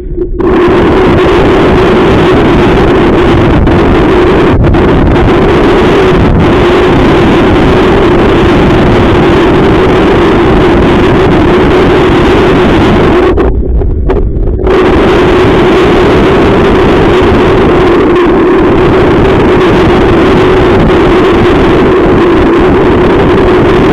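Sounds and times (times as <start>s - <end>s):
steady hum: 0.0s - 23.9s
strong wind buffeting microphone: 0.0s - 23.9s.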